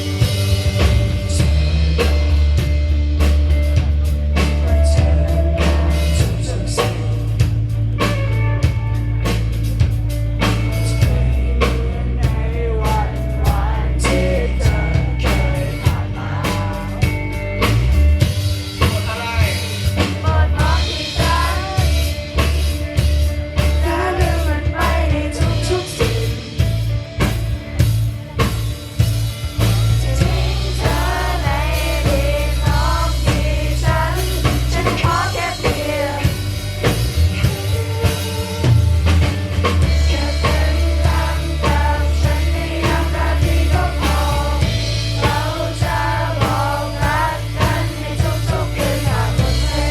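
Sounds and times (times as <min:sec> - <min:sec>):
live rock band playing: 0:00.0 - 0:49.9
person singing: 0:20.0 - 0:22.5, 0:29.6 - 0:36.5.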